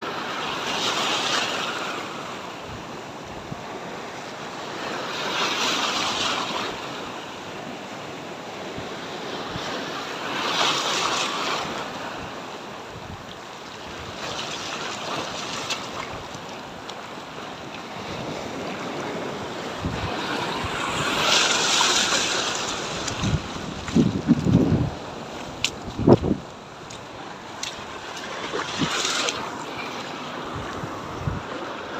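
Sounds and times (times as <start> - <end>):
waves washing against rocks: 0.1 - 31.9
wind buffeting microphone: 17.9 - 29.5, 30.4 - 31.6.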